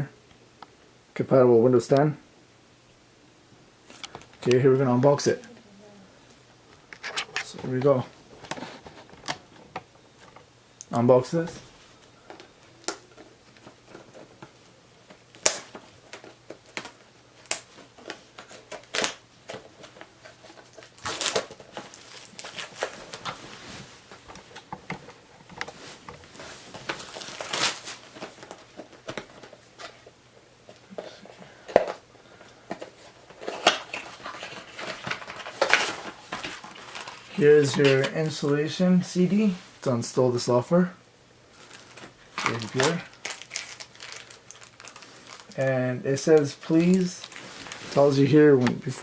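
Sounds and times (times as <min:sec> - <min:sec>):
packaging crinkling and tearing: 0:15.1 - 0:23.4, 0:25.7 - 0:30.0, 0:32.7 - 0:38.1, 0:41.6 - 0:45.6, 0:46.3 - 0:49.0.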